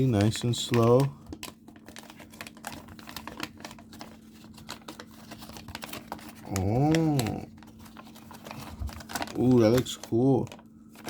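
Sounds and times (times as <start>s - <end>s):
plastic packaging clicking and rustling: 0.0s - 11.0s
person saying oh: 6.4s - 7.5s.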